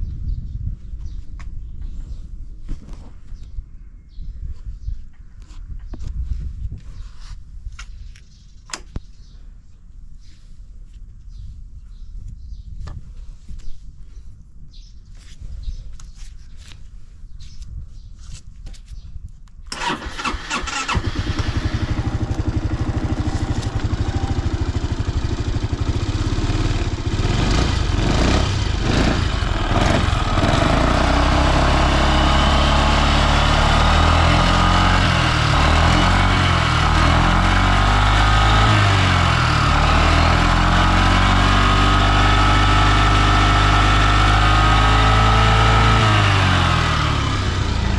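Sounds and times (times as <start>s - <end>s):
scooter engine starting and idling: 19.7s - 47.9s.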